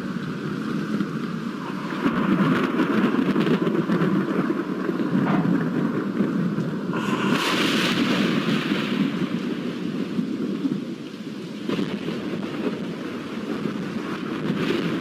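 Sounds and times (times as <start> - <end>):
heavy rain: 0.0 - 15.0
rumbling thunder: 1.6 - 10.9.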